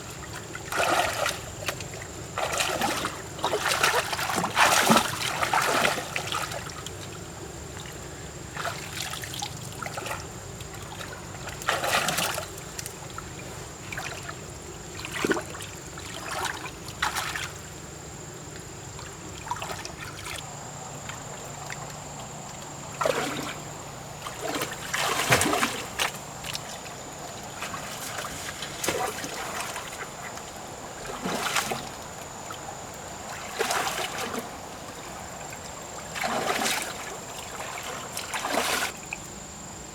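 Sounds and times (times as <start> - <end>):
shallow water splashing: 0.0 - 7.2, 7.8 - 17.7, 18.9 - 39.0.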